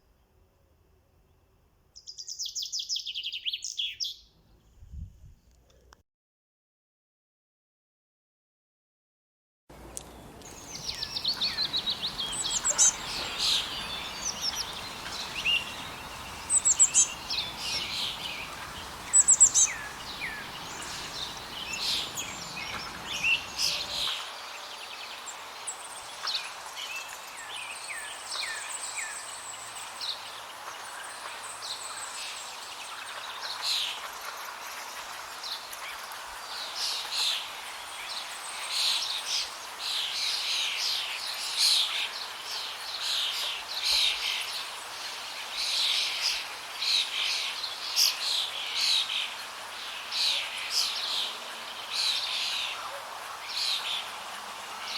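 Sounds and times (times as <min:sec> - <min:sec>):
low background noise: 0:09.7 - 0:54.9
sparrows chirping: 0:09.8 - 0:26.4.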